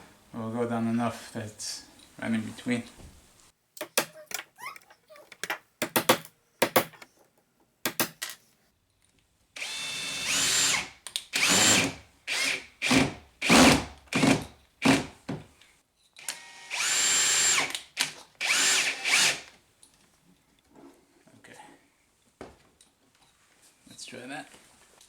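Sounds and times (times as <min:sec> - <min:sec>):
power drill whining: 0:09.6 - 0:15.0, 0:16.2 - 0:19.5.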